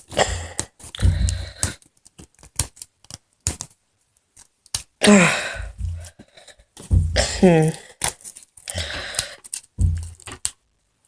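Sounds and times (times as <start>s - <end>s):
sticker ripping: 0.0s - 3.7s
rustling and scraping: 0.0s - 3.8s, 5.6s - 7.3s, 7.9s - 10.6s.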